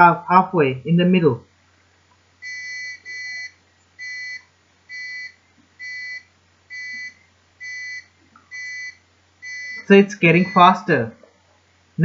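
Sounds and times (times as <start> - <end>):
high-pitched alarm beeps: 2.4 - 10.9.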